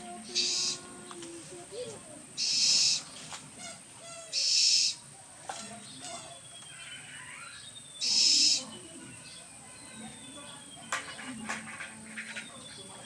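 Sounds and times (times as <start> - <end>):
owl screeching: 0.4 - 0.8, 2.4 - 3.1, 4.2 - 5.0, 6.7 - 8.6.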